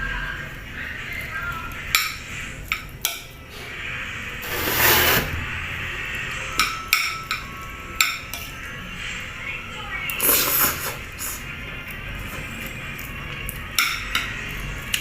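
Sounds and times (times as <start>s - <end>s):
cutlery scraping plate: 4.4s - 5.4s
cutlery clinking on dishes: 6.6s - 8.6s, 12.2s - 15.0s.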